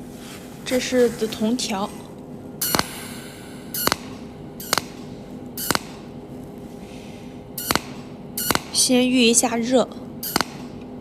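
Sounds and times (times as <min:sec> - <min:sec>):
sharp welding zaps: 0:02.6 - 0:06.2, 0:07.6 - 0:09.1, 0:10.2 - 0:10.8.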